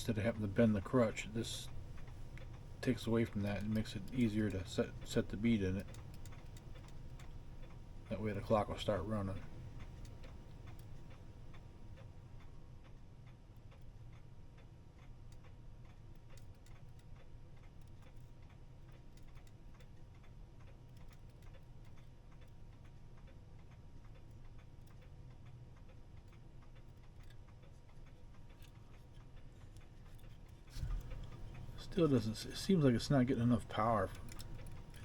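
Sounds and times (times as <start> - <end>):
faint clock ticking: 0.0 - 35.0.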